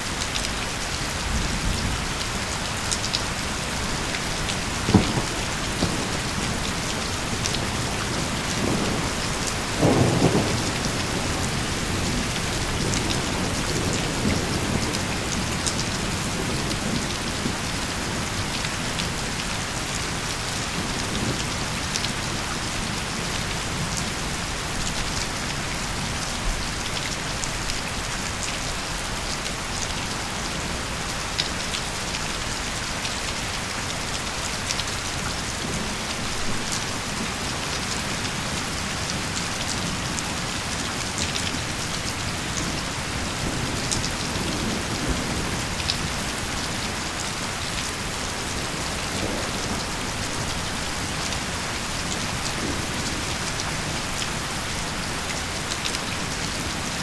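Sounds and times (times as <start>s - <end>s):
heavy rain: 0.0s - 57.0s
distant thunder rumbles: 3.7s - 15.4s.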